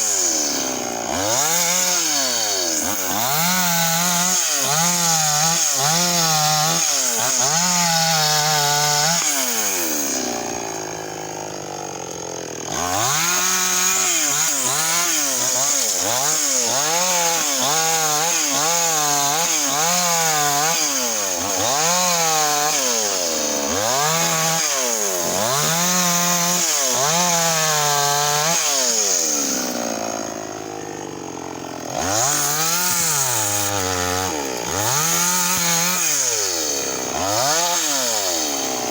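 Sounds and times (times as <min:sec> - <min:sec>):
chainsaw cutting wood: 0:00.0 - 0:38.9.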